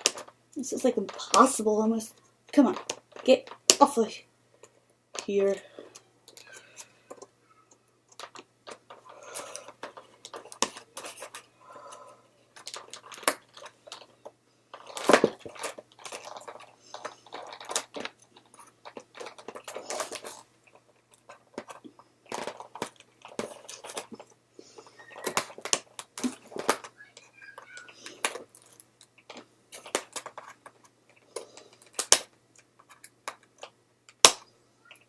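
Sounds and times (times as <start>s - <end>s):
plastic packaging crinkling: 12.5s - 30.4s.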